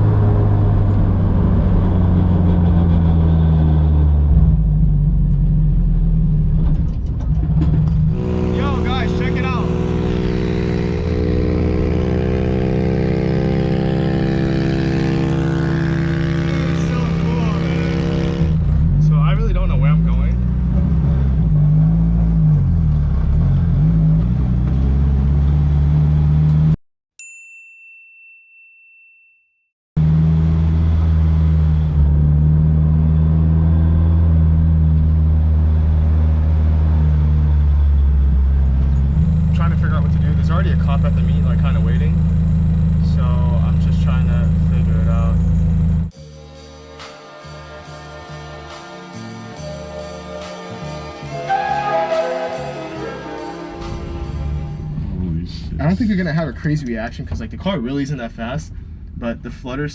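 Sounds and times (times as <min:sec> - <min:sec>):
car engine droning steadily: 0:00.0 - 0:26.8, 0:30.0 - 0:46.1
car engine running: 0:38.1 - 0:46.1.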